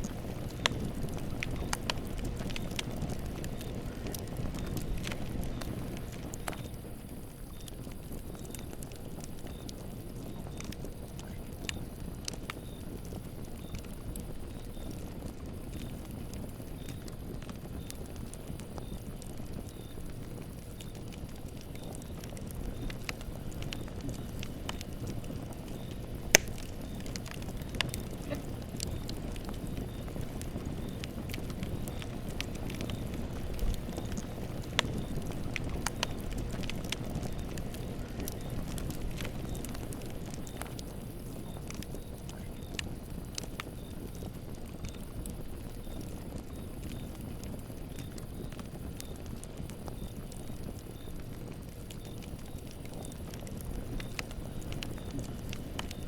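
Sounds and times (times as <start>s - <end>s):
campfire flames rushing: 0.0s - 56.0s
wood crackling and popping: 0.0s - 56.0s.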